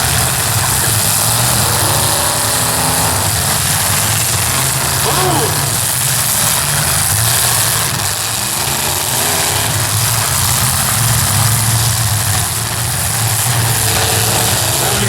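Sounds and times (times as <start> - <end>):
car engines revving: 0.0 - 15.0.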